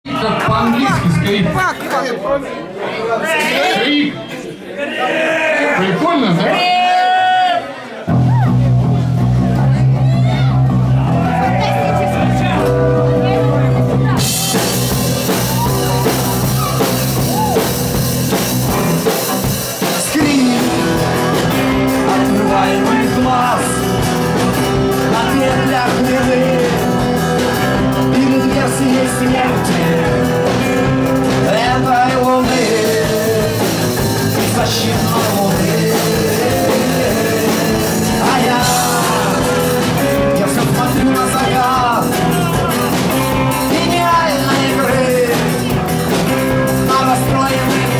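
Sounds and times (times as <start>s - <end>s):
rock band playing live: 0.0s - 1.9s, 8.0s - 47.9s
person singing: 19.0s - 47.9s.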